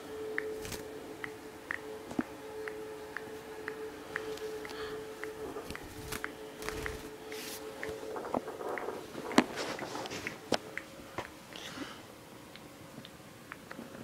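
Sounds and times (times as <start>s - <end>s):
faint steady hum: 0.0s - 14.0s
budgies clicking and tapping: 4.2s - 7.2s.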